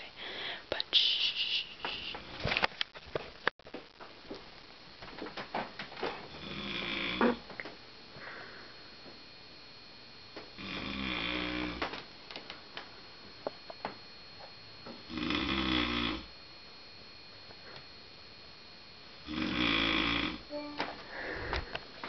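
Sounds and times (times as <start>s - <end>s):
faint breath: 0.0s - 0.7s, 8.1s - 9.1s, 20.9s - 22.0s
man snoring loudly: 6.3s - 7.4s, 10.6s - 11.8s, 15.1s - 16.3s, 19.2s - 20.5s.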